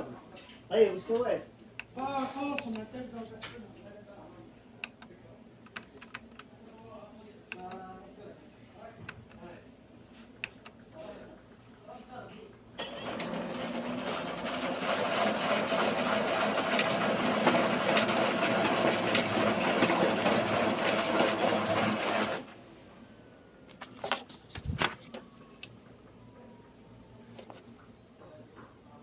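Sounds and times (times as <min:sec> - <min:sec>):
laser printer running: 0:12.8 - 0:23.6.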